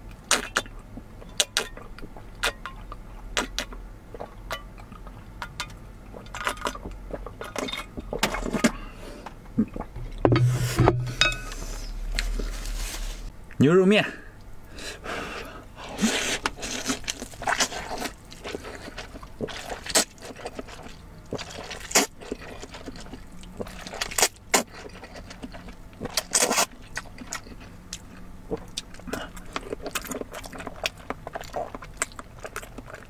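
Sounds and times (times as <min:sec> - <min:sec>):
slurping and chewing noodles: 0:00.0 - 0:10.0, 0:14.7 - 0:33.0.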